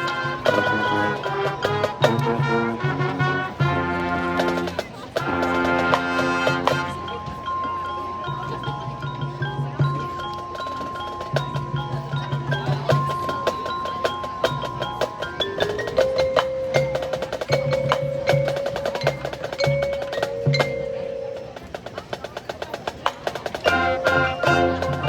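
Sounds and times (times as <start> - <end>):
mallet keyboard strikes: 0.0 - 25.0
wood block strikes: 5.4 - 25.0.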